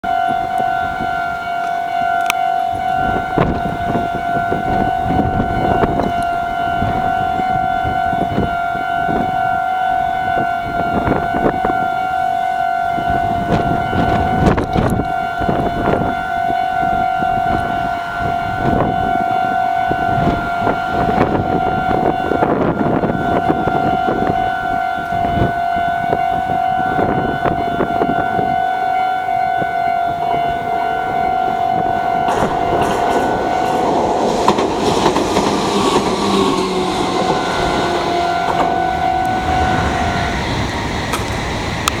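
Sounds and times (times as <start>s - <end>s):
level-crossing alarm ringing: 0.0s - 42.0s
train wheels clattering on rails: 32.2s - 42.0s.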